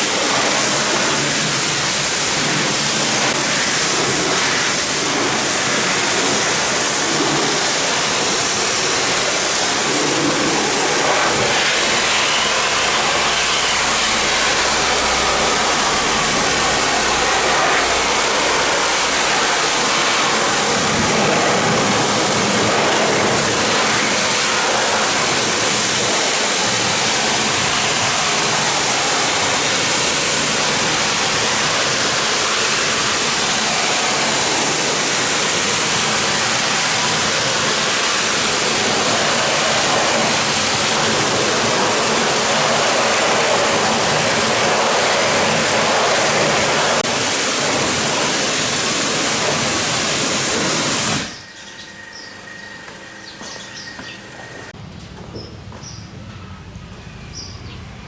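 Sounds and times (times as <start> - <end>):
pressure washer spraying water: 0.0 - 51.5.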